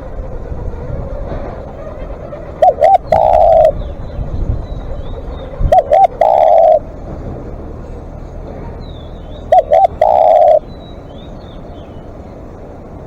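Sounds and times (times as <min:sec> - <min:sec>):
dove cooing: 0:01.6 - 0:07.0, 0:09.4 - 0:10.7
small birds chirping: 0:01.9 - 0:07.0, 0:08.7 - 0:12.5.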